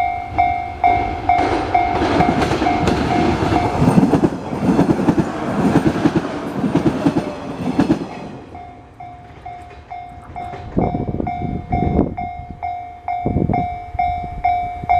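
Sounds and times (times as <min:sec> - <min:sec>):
crossing warning bell ringing: 0:00.0 - 0:14.9
train wheels clattering over rails: 0:00.8 - 0:11.9.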